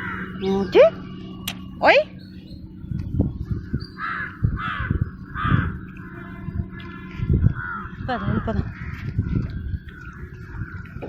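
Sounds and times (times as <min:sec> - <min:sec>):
crow cawing: 0:00.0 - 0:00.4, 0:03.6 - 0:09.2
low thumps and rumbling: 0:00.0 - 0:11.0.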